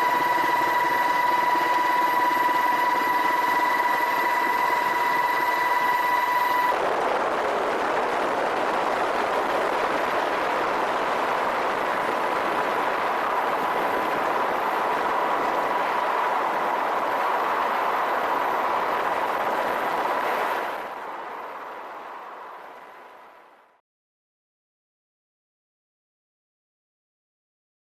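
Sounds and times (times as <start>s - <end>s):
helicopter engines and rotor: 0.0s - 21.7s
faint steady whine: 0.0s - 23.8s.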